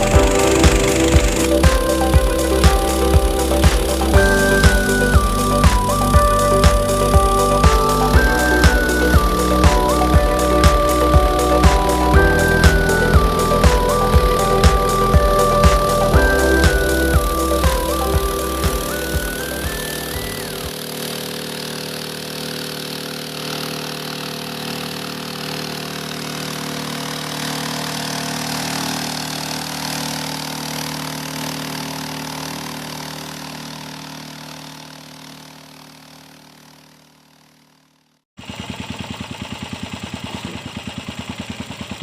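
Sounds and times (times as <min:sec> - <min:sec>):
steady drone with held tones: 0:00.0 - 0:20.7
small engine running: 0:00.0 - 0:42.0.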